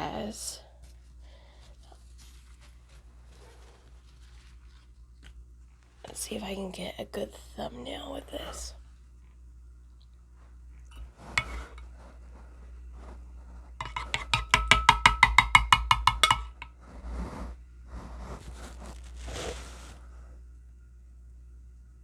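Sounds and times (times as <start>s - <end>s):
handling knocks and rustles: 10.9s - 17.0s.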